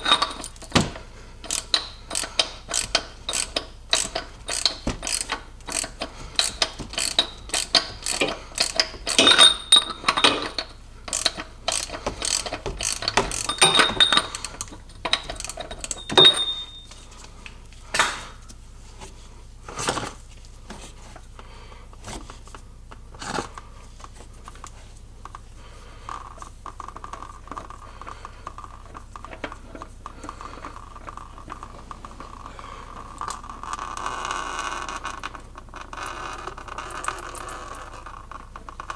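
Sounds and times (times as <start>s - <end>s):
metallic rings: 0.0s - 0.8s, 1.4s - 17.1s
ratchet wrench clicking: 0.0s - 16.8s
metal clinks and clanks: 0.0s - 17.0s.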